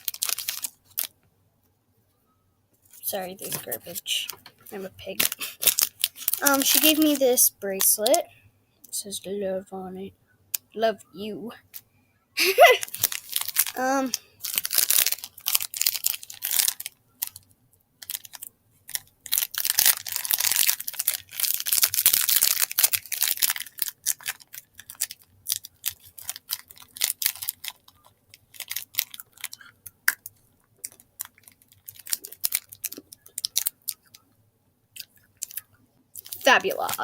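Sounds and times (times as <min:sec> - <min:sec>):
plastic packaging crinkling and tearing: 0:00.0 - 0:01.1, 0:02.9 - 0:08.2, 0:12.7 - 0:30.2, 0:30.8 - 0:34.3, 0:35.0 - 0:35.6, 0:36.2 - 0:37.0.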